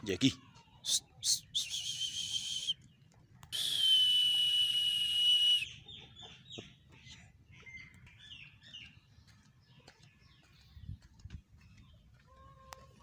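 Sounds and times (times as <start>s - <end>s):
chickens clucking and peeping: 5.7s - 13.0s.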